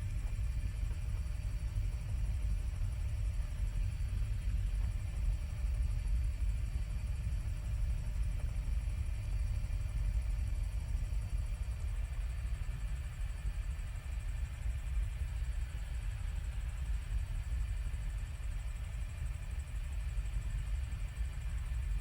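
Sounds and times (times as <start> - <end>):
helicopter engine and rotor rumble: 0.0 - 22.0.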